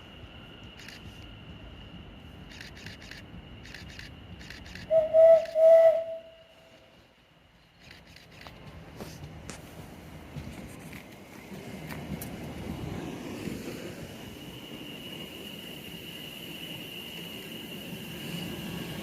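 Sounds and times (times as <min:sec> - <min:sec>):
faint high whine: 0:00.0 - 0:08.5, 0:12.6 - 0:19.0
train horn toots: 0:04.9 - 0:06.9.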